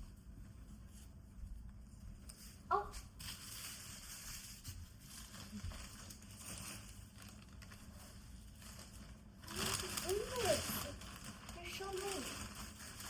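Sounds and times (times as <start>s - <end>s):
clothes rustling and crinkling: 0.0s - 13.0s.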